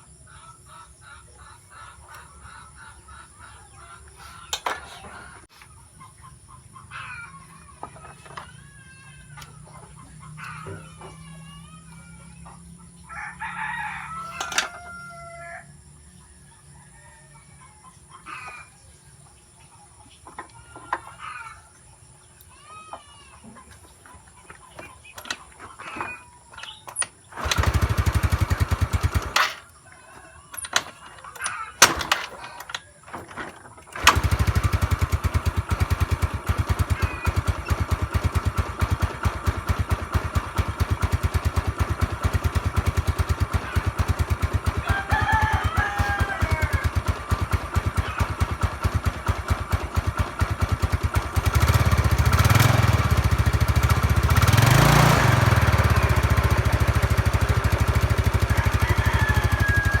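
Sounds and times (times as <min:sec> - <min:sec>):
scooter engine idling and revving: 0:06.3 - 0:13.1, 0:24.8 - 0:29.7, 0:30.5 - 1:00.0.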